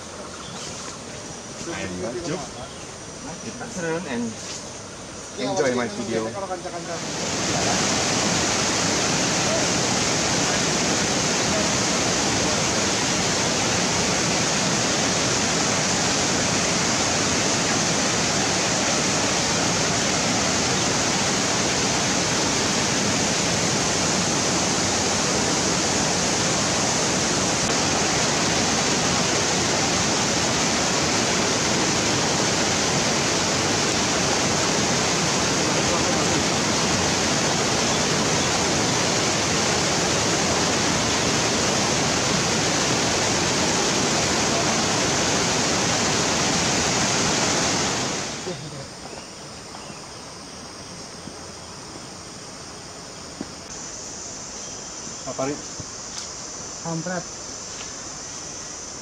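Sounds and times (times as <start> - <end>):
running water rushing: 0.0 - 59.0.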